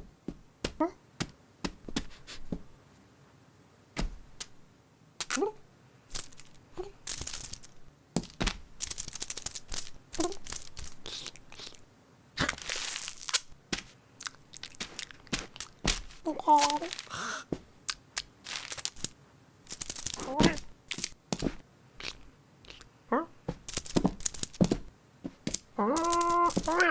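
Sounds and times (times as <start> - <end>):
rustling and crinkling noise: 0.0 - 26.9.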